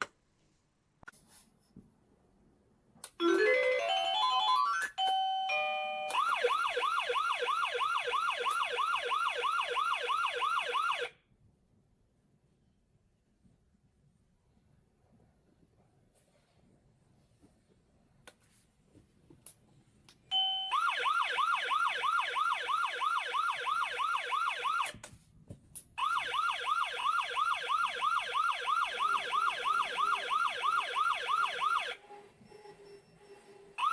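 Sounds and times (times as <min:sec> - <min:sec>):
pager siren alert tone: 0:27.1 - 0:32.0.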